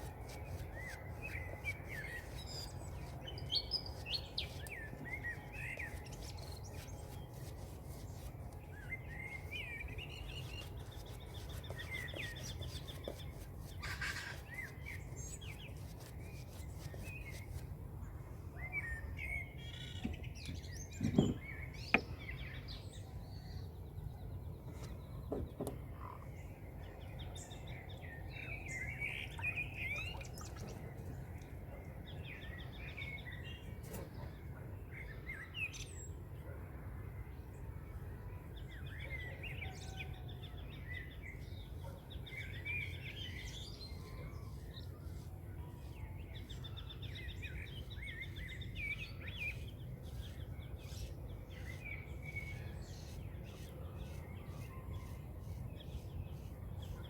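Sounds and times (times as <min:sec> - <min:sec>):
birds chirping and singing: 0:00.0 - 0:17.6, 0:27.0 - 0:31.0, 0:40.6 - 0:57.0.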